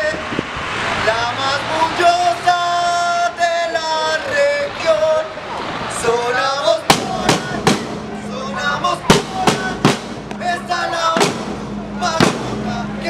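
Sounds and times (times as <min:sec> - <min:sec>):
group of voices chanting: 0:00.8 - 0:13.0
loud drum strikes: 0:06.9 - 0:08.1, 0:09.1 - 0:10.4, 0:11.1 - 0:12.7.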